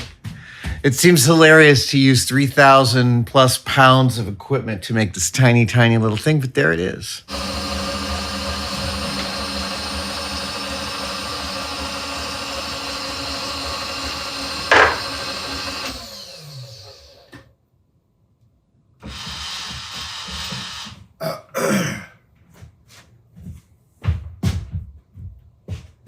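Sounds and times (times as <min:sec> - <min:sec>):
milling machine running: 0:07.3 - 0:17.3
spindle winding down: 0:07.3 - 0:17.4.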